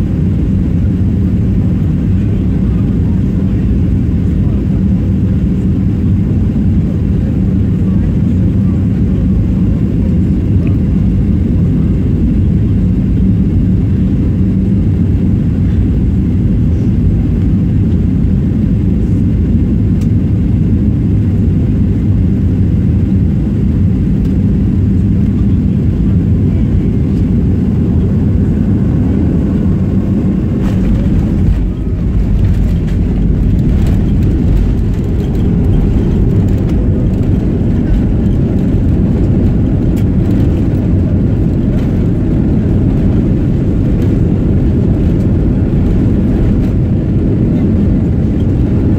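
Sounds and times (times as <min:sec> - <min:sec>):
airliner cabin engine rumble: 0:00.0 - 0:48.9
knocks and rattles: 0:30.6 - 0:39.2.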